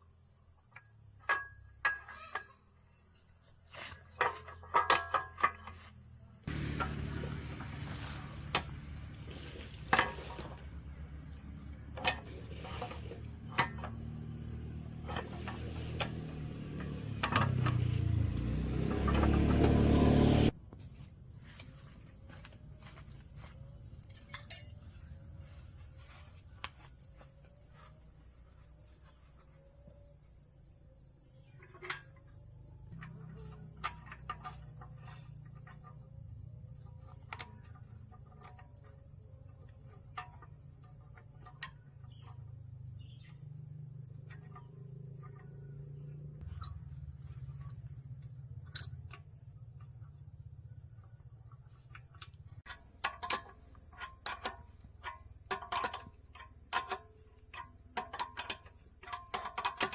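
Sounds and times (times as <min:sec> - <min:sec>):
high insect chirring: 0:05.6 - 0:59.9
low hum: 0:06.5 - 0:20.6.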